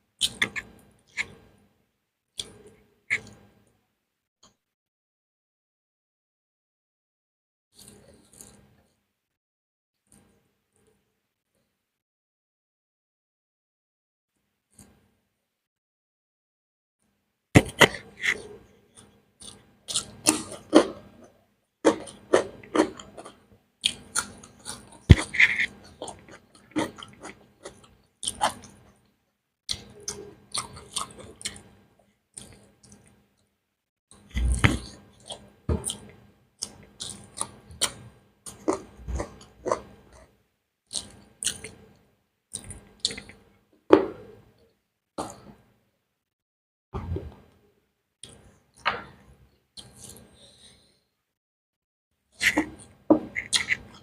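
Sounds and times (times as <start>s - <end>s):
person chewing food: 7.8s - 8.6s, 17.6s - 21.1s, 21.8s - 28.9s, 29.7s - 33.2s, 34.2s - 40.3s, 40.9s - 41.8s, 42.5s - 43.4s, 49.8s - 50.8s, 52.4s - 54.0s.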